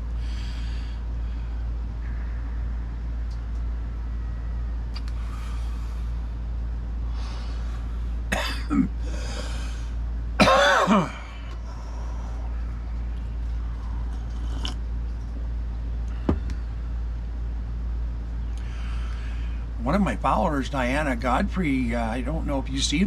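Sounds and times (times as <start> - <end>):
steady low hum: 0.0 - 23.0
man coughing: 8.3 - 9.0, 10.4 - 11.4.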